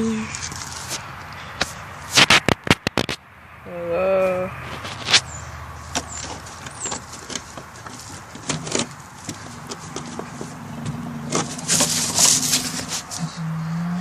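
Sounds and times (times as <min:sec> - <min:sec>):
rustling scrape: 0:00.3 - 0:03.2, 0:04.6 - 0:05.3, 0:06.0 - 0:13.4
stick knocking and scraping: 0:01.6 - 0:03.2, 0:05.9 - 0:13.3.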